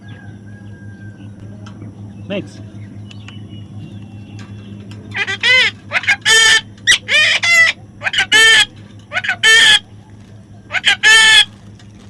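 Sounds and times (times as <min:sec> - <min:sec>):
parrot squawking: 0:05.1 - 0:09.9, 0:10.7 - 0:11.6.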